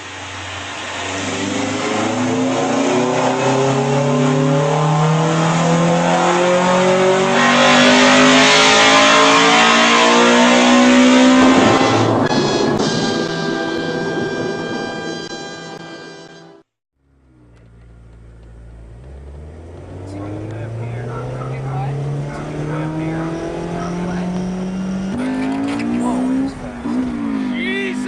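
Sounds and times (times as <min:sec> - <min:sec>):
car engine revving: 0:00.0 - 0:14.7, 0:17.0 - 0:28.0
music: 0:12.3 - 0:16.7.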